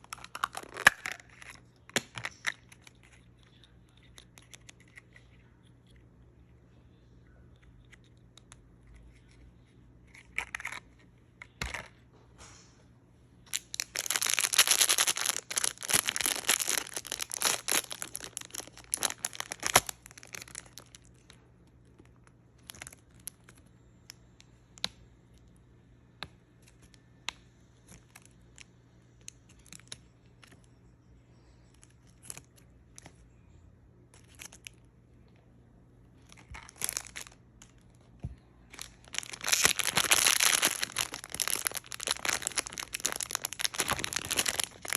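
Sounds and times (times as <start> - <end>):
light clicks and rustles of handling: 1.2 - 12.7
packaging tearing and crinkling: 13.5 - 21.1, 36.6 - 37.4, 38.8 - 44.9.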